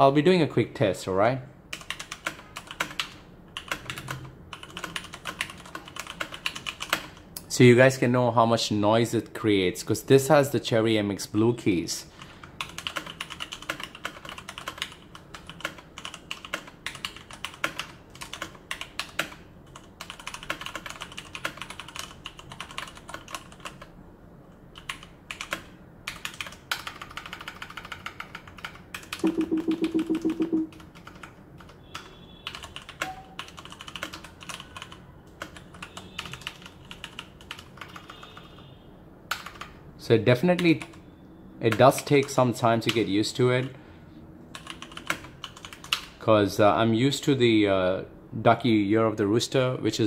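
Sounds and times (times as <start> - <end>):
mechanical keyboard typing: 1.7 - 7.2, 12.6 - 23.9, 24.8 - 31.8, 32.4 - 38.3, 39.3 - 39.7, 44.5 - 46.2.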